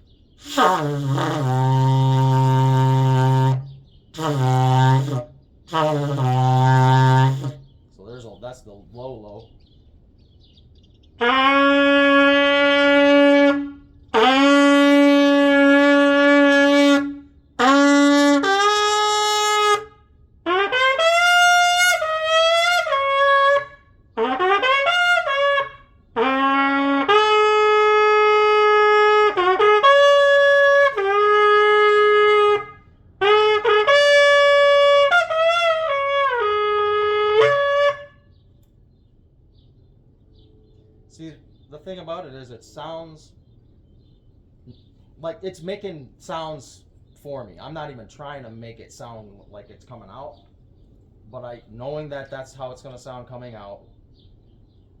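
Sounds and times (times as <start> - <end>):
shofar blasts: 0.4 - 7.6, 11.2 - 38.3.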